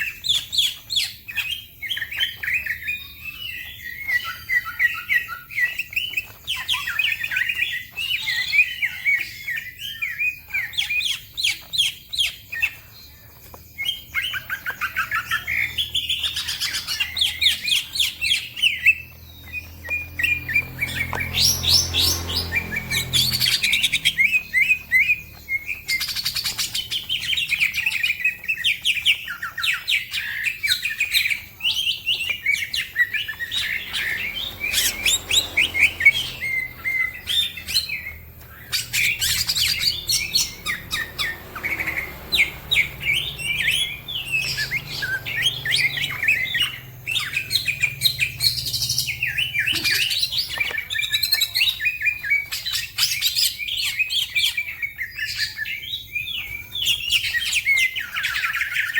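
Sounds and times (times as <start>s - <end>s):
bird singing rapid chirps and whistles: 0.0s - 58.9s.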